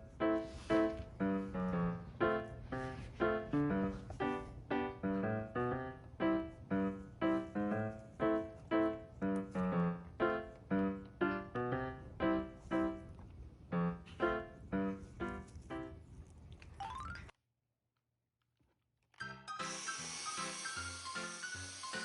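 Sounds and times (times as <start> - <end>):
light piano melody: 0.0 - 17.3.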